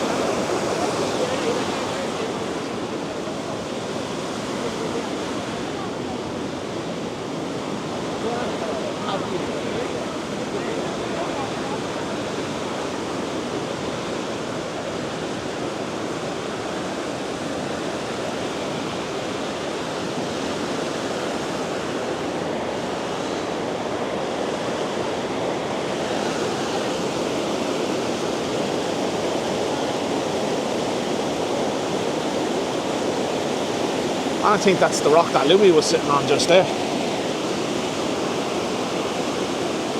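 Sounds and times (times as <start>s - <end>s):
water rushing over rocks: 0.0s - 6.1s, 19.0s - 39.9s.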